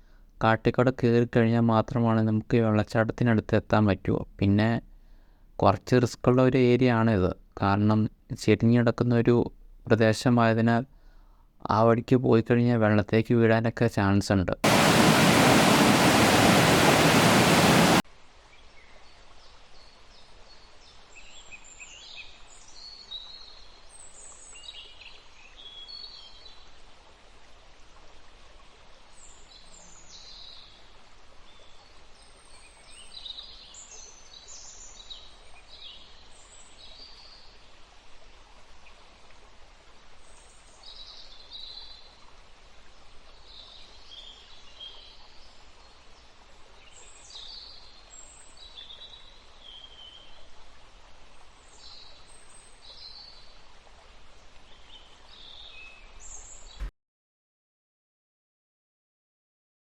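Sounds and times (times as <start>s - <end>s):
birds chirping: 14.6s - 18.0s
waterfall rushing loudly: 14.6s - 18.0s
faint rush of water: 14.6s - 56.9s.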